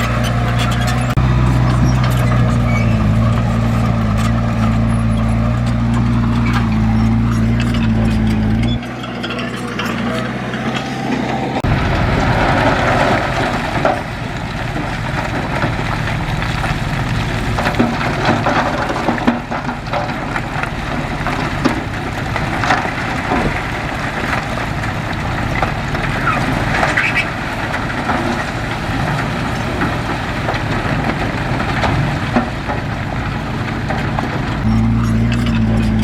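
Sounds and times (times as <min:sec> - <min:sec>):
clanks and knocks: 0:00.0 - 0:36.0
diesel machinery running: 0:00.0 - 0:36.0.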